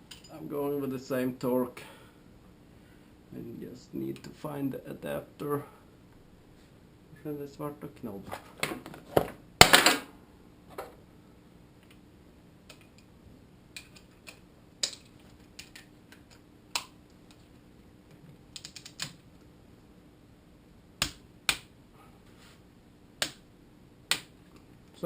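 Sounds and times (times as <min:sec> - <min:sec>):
hand tools clicking and tapping: 0:13.8 - 0:16.9.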